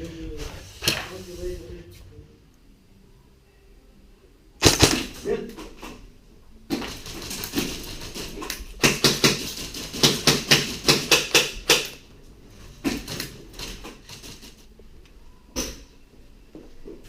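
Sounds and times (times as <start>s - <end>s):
airsoft guns firing: 4.6s - 5.4s.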